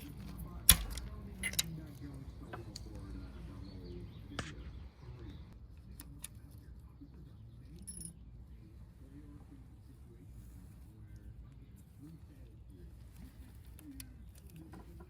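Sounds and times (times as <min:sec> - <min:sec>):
metal rattle: 0:00.0 - 0:01.8
faint background voices: 0:00.0 - 0:15.0
metallic clicks of hand tools: 0:00.7 - 0:01.7.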